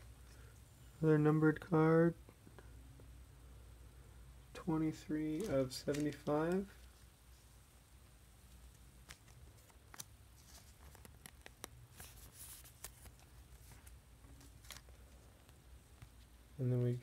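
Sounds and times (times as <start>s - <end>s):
trading cards rustling and clicking: 5.1s - 7.2s, 8.5s - 16.4s.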